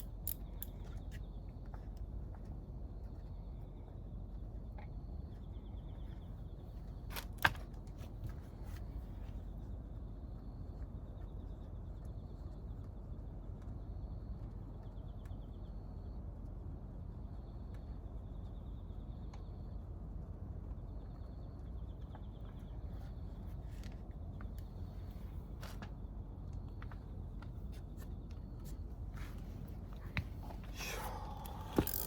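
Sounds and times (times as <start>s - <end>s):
sharp clicks: 31.2s - 32.0s.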